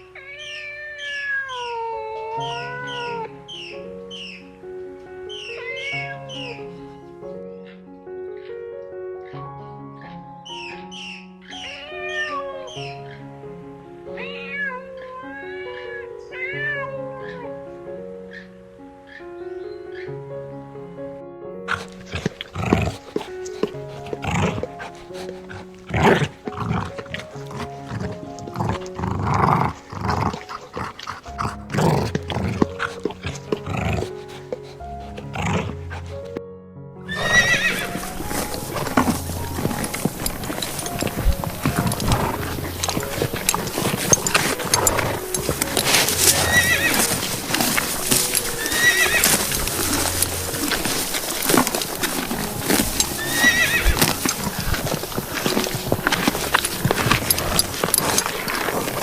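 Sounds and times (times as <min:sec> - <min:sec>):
animal sounds: 0:00.0 - 0:04.6, 0:05.2 - 0:07.0, 0:09.2 - 0:13.3, 0:21.6 - 0:36.4, 0:37.1 - 0:59.0
background music with held notes: 0:00.0 - 0:59.0
scuffling: 0:21.6 - 0:36.4, 0:37.1 - 0:59.0
horse hooves clopping: 0:21.7 - 0:36.4, 0:37.1 - 0:59.0.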